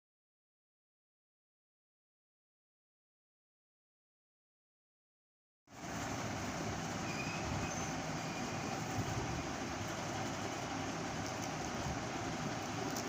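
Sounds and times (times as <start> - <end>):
background rumble and hiss: 5.8 - 13.0.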